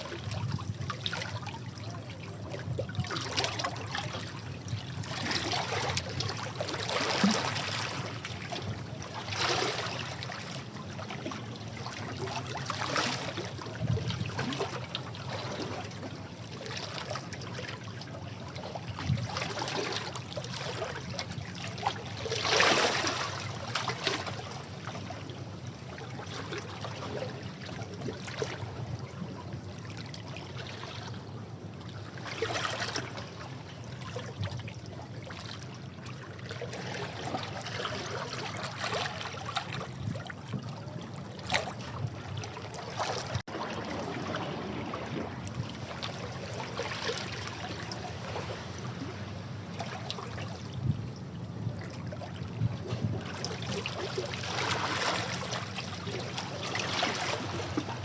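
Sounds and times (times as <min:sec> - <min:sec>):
sea waves washing over rocks: 0:42.9 - 0:49.8.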